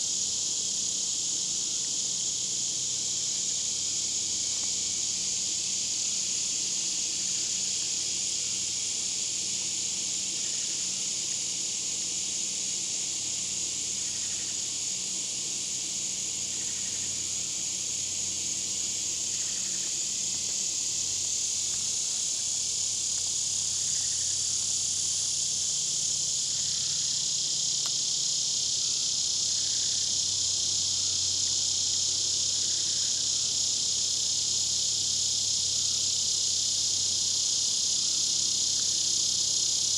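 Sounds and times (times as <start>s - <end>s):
insects buzzing: 0.0s - 39.9s.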